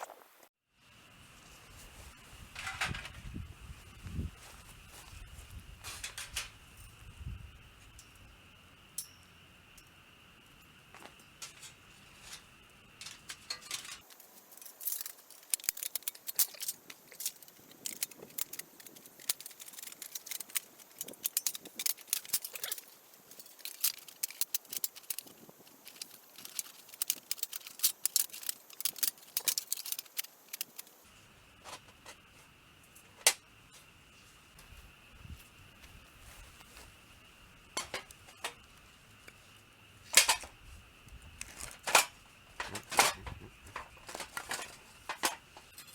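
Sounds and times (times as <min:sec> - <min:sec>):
small hard objects clicking: 0:13.0 - 0:31.1.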